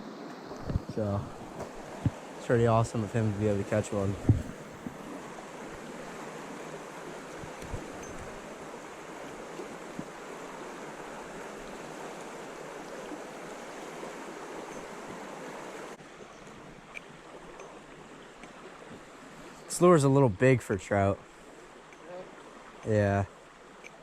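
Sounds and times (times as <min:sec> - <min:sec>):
fast-flowing river rushing: 0:00.0 - 0:20.1
faint clicks: 0:21.9 - 0:22.1, 0:23.8 - 0:24.0.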